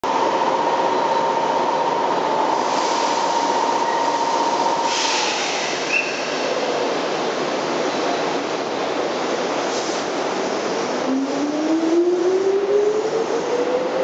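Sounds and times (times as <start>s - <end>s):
electric train whine: 0.0s - 7.9s, 10.3s - 14.0s
train hiss: 2.5s - 11.1s.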